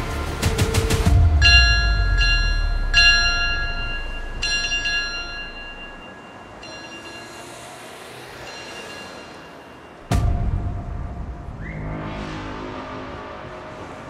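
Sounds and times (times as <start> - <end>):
low rumble: 0.0 - 6.1, 10.1 - 14.0
ring bell struck: 1.4 - 10.3.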